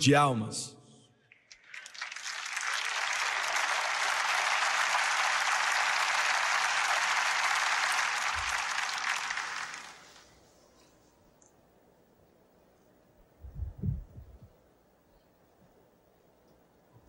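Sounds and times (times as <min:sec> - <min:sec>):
congregation applauding: 0:01.3 - 0:10.3.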